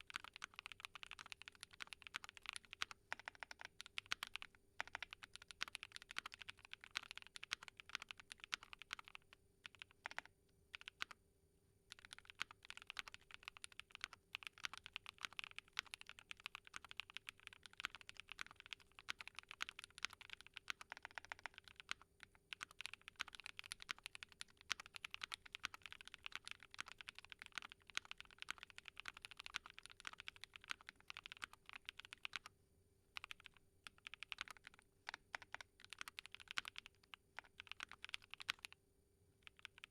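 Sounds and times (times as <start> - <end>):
fast mechanical keyboard typing: 0.0 - 11.2, 11.9 - 32.5, 33.2 - 38.8, 39.4 - 39.9.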